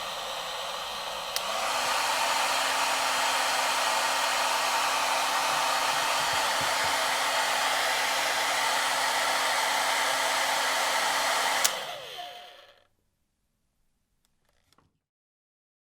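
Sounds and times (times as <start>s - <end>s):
hair dryer switch click: 0.0s - 12.6s
hair dryer blowing: 0.0s - 12.8s.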